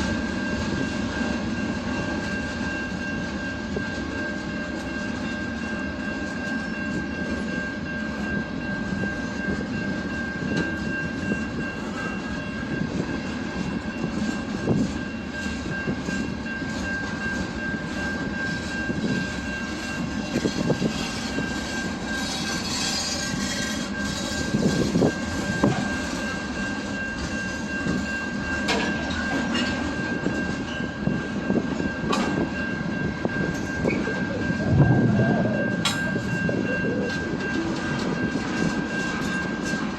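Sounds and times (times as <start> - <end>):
train wheels clattering on rails: 0.0 - 39.9.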